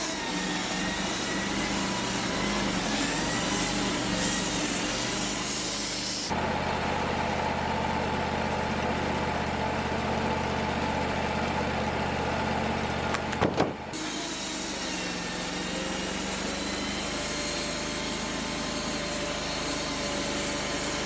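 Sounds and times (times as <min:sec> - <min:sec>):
sawmill engine running: 0:00.0 - 0:21.0.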